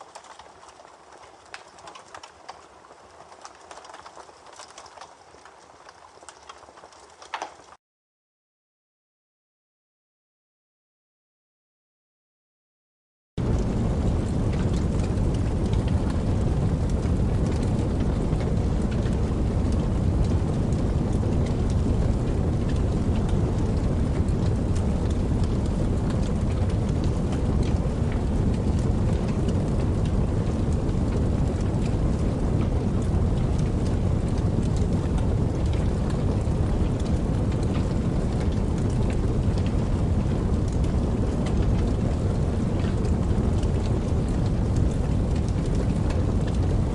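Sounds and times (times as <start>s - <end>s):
steady rain hiss: 0.0s - 7.8s, 13.4s - 46.9s
deep rumble: 13.4s - 46.9s.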